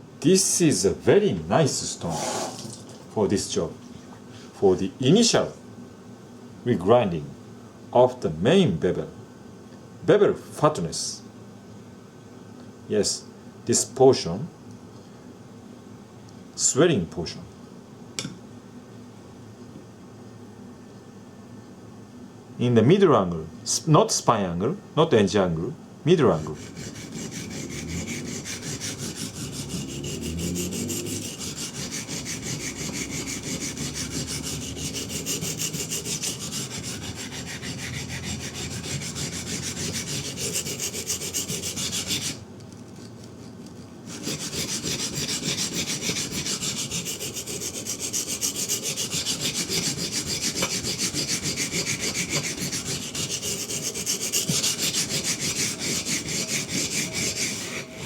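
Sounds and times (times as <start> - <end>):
knife grinding on water stone: 26.5 - 42.4, 44.1 - 58.0.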